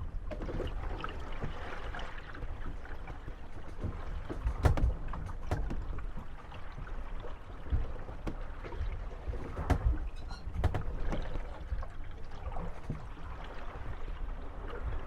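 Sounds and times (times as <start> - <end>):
wooden boat hulls knocking: 2.7 - 11.9.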